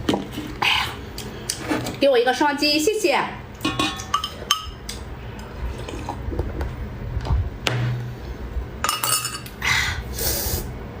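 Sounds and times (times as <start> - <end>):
tableware clinking: 3.6 - 4.8, 8.8 - 9.5
dishes scraping: 3.6 - 5.0.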